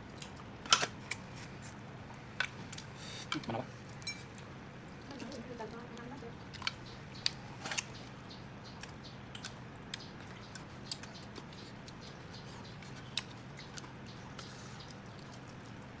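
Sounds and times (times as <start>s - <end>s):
person chewing chicken: 8.8s - 15.8s.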